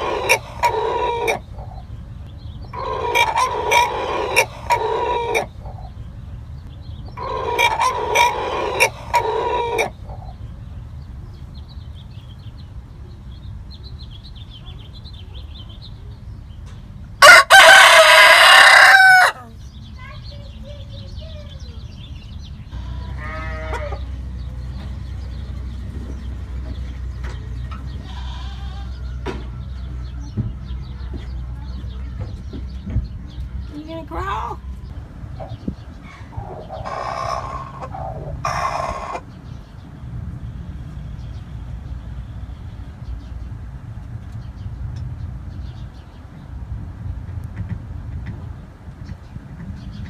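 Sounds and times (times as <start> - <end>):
rooster crowing: 0.0 - 1.4, 17.2 - 19.5
rooster clucking: 0.0 - 1.9, 2.7 - 6.0, 7.1 - 10.4, 17.2 - 19.6, 22.7 - 29.3, 35.4 - 39.4.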